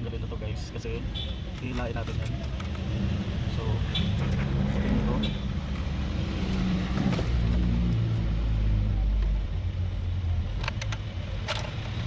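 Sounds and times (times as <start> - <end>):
motor vehicle rumble: 0.0 - 12.0
clicks of parts being handled: 1.5 - 2.8, 10.6 - 12.0.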